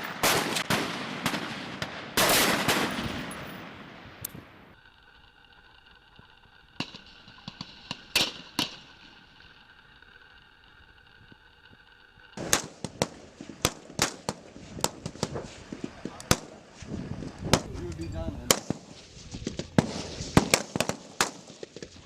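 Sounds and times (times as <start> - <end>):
rifle shots: 0.0 - 4.2, 12.4 - 16.7, 18.5 - 19.0, 19.7 - 21.8.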